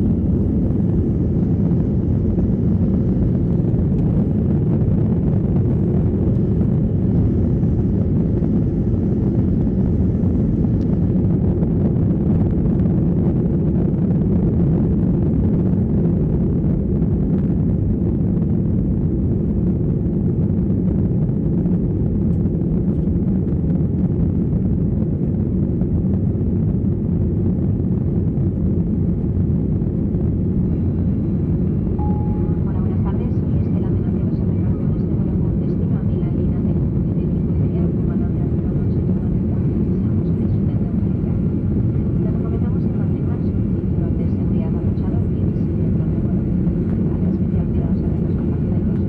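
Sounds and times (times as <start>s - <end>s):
jet engine cabin rumble: 0.0s - 49.0s.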